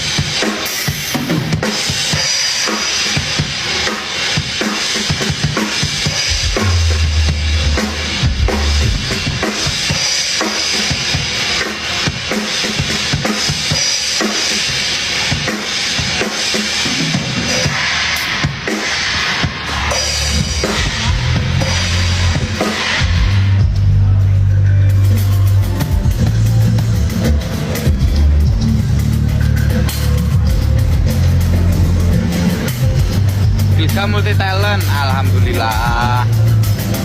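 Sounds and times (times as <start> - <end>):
drum kit playing: 0.0 - 37.0
deep bass note: 6.3 - 9.3, 20.1 - 32.2.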